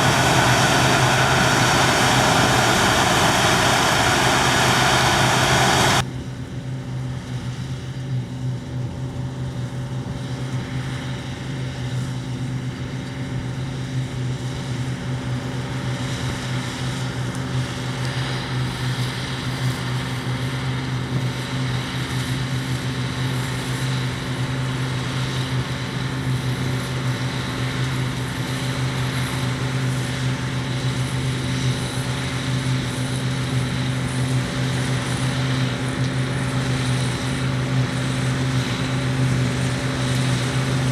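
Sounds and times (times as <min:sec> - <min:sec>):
large diesel engine running: 0:00.0 - 0:06.0.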